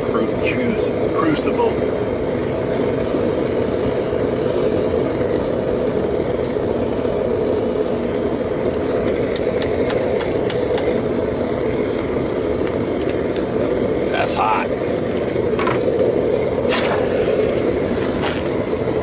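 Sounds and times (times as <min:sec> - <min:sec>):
propane burner rushing: 0:00.0 - 0:19.0.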